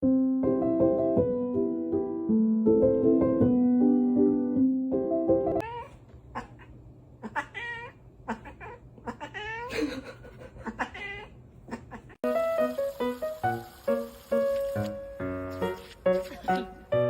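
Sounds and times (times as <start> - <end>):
cat meowing: 5.6 - 9.7, 10.6 - 12.2.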